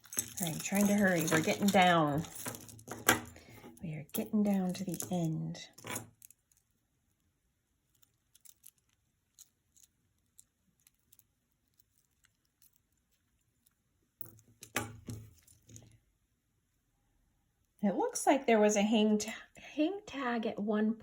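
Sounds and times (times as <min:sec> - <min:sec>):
beads and chain clicking: 0:00.0 - 0:06.7, 0:07.8 - 0:15.9
jewelry clinking and rustling: 0:00.0 - 0:06.9, 0:07.8 - 0:16.0.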